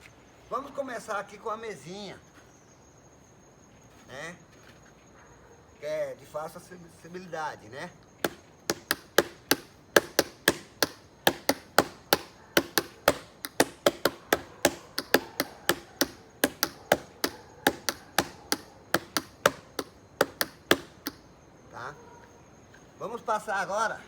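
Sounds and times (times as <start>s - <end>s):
knocks drumming on table: 8.3s - 21.2s.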